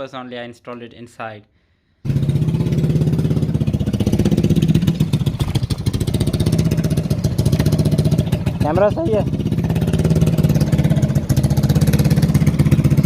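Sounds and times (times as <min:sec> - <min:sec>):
small engine idling: 0:02.0 - 0:13.0.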